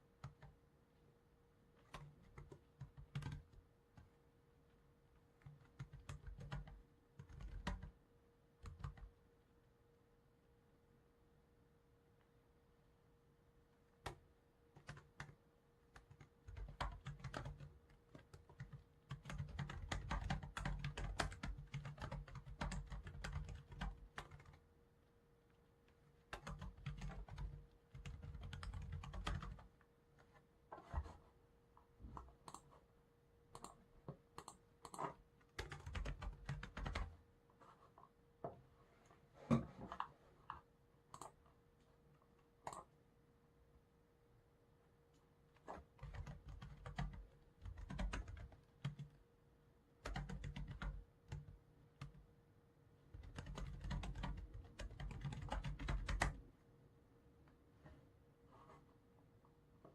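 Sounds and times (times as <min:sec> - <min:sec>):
computer keyboard typing: 0:00.2 - 0:00.6, 0:01.8 - 0:04.1, 0:05.4 - 0:08.0, 0:08.6 - 0:09.1, 0:14.8 - 0:24.6, 0:26.2 - 0:29.7, 0:32.2 - 0:32.7, 0:33.5 - 0:33.8, 0:34.4 - 0:37.2, 0:41.1 - 0:41.4, 0:45.9 - 0:49.2, 0:50.0 - 0:52.2, 0:53.1 - 0:56.4.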